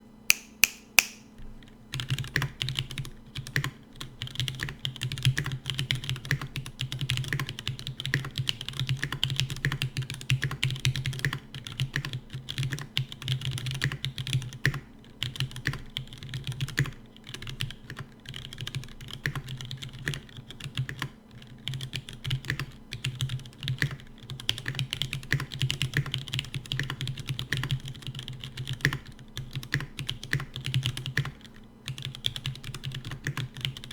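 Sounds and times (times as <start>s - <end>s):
mechanical keyboard typing: 1.0s - 33.9s.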